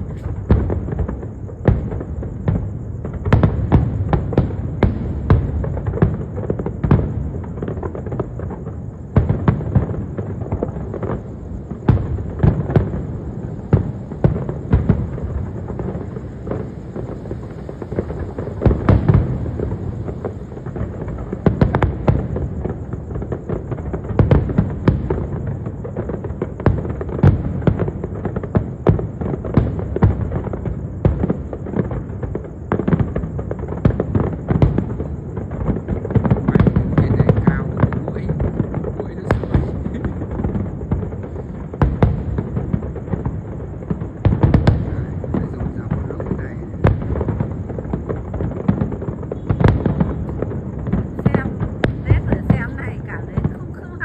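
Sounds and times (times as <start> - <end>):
fireworks bangs and crackles: 0.0 - 54.0
fireworks booms: 0.0 - 54.0
constant rumble: 35.6 - 41.8.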